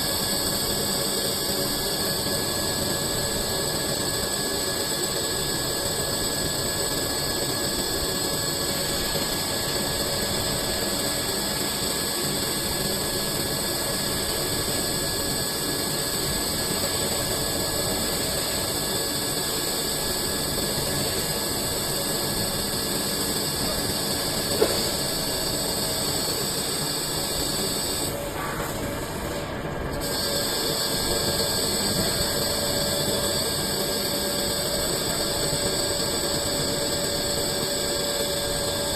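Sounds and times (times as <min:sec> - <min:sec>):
lathe machining hiss and whine: 0:00.0 - 0:38.9.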